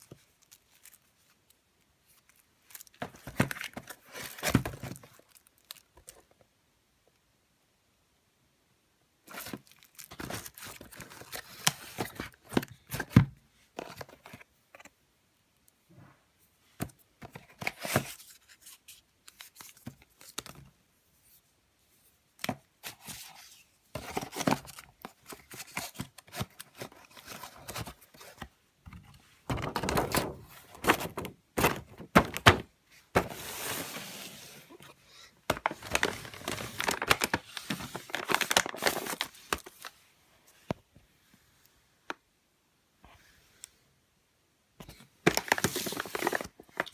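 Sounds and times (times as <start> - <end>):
plastic wrapping crinkling and tearing: 2.1 - 5.9, 9.3 - 12.4, 35.6 - 39.9, 45.3 - 46.9.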